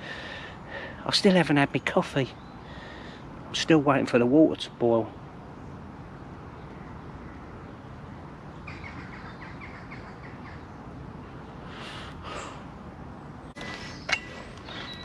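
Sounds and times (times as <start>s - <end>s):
small bird chirping: 13.4s - 15.0s.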